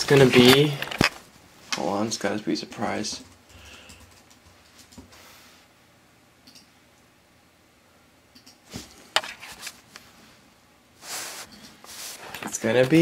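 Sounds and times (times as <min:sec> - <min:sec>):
keyboard and mouse clicks: 0:03.2 - 0:05.1, 0:06.4 - 0:06.7, 0:08.3 - 0:08.6.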